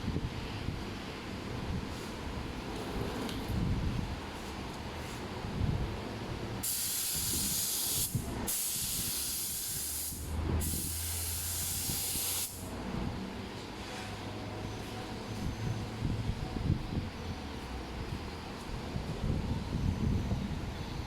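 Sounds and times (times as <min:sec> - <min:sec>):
spray hissing: 0:06.6 - 0:12.7.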